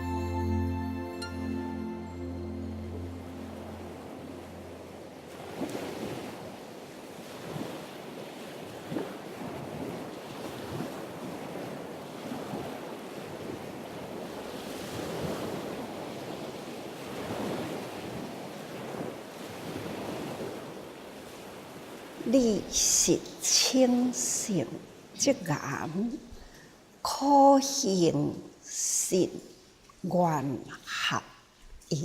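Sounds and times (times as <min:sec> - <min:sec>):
rushing noise like surf: 0:01.9 - 0:06.8.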